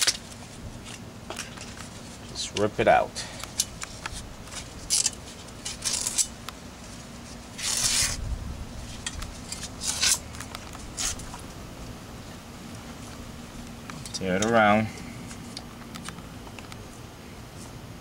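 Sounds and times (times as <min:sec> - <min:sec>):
speaker being torn apart: 0:03.6 - 0:06.4, 0:07.6 - 0:08.2, 0:09.0 - 0:11.4.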